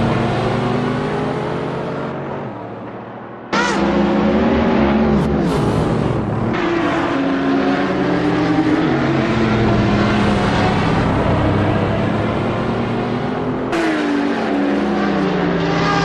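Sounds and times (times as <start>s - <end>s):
car engine revving: 0.0s - 16.0s.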